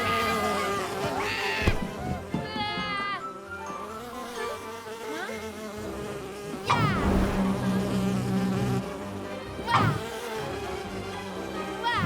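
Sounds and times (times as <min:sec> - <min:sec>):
cartoon insect buzzing: 0:00.0 - 0:02.0, 0:03.8 - 0:10.8
cartoon falling swoop: 0:06.7 - 0:08.2.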